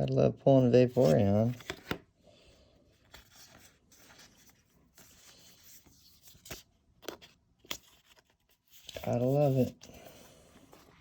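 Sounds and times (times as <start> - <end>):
trading cards rustling and snapping: 0.9 - 2.1, 3.0 - 10.0.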